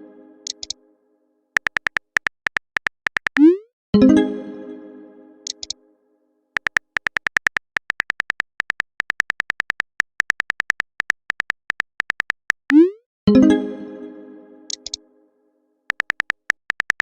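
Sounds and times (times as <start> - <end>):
phone keyboard typing clicks: 0.5 - 0.8, 1.6 - 3.5, 5.5 - 5.8, 6.6 - 12.8, 14.7 - 15.0, 15.9 - 17.0.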